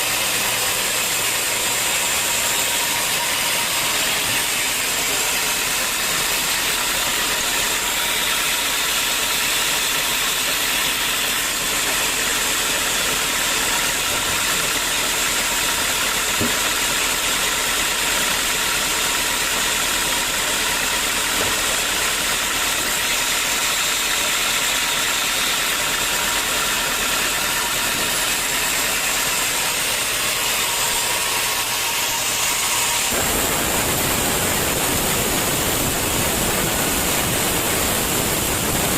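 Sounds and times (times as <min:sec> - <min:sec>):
sawmill machinery running: 0:00.0 - 0:38.9
faint steady whine: 0:33.1 - 0:38.9.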